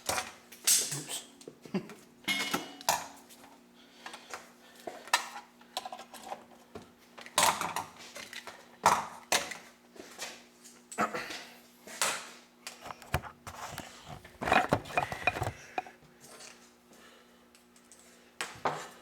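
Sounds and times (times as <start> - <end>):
metal tools clattering on surface: 14.1 - 15.9.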